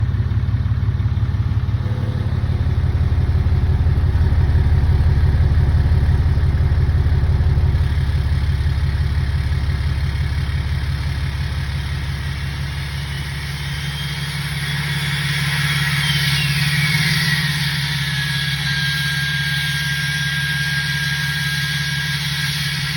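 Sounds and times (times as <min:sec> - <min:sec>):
diesel engine running: 0:00.0 - 0:22.9
turbo whistle: 0:12.4 - 0:22.9.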